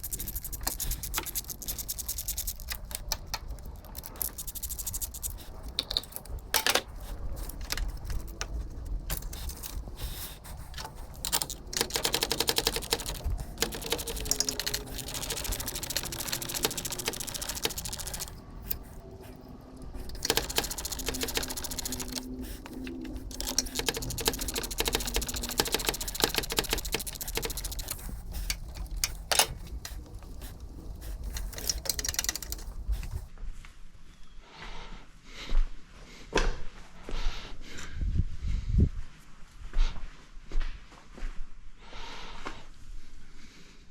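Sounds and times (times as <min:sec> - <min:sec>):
mechanical clicking and rattling: 0:00.0 - 0:33.3.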